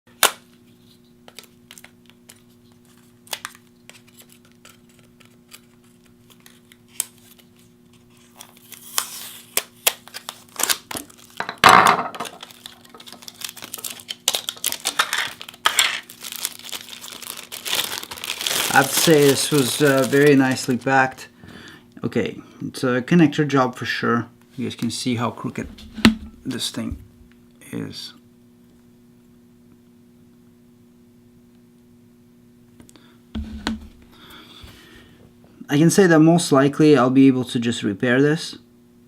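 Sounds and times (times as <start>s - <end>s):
packaging crinkling and rustling: 0.7s - 21.3s.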